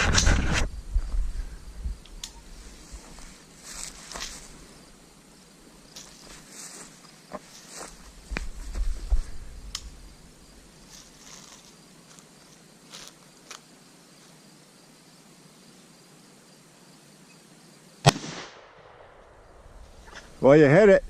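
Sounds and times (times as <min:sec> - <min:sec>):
insects chirring: 0:00.0 - 0:21.0
rifle shot with echo: 0:18.0 - 0:19.5.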